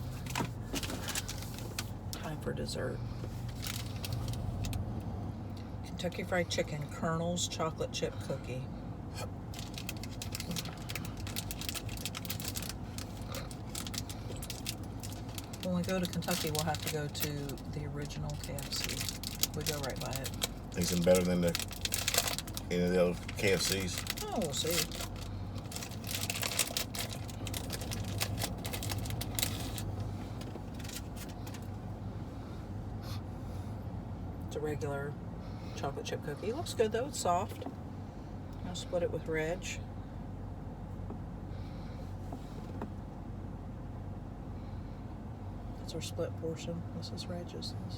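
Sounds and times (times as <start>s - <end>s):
steady low hum: 0.0s - 47.9s
packaging crinkling: 3.4s - 4.8s, 9.6s - 17.2s, 18.4s - 31.7s.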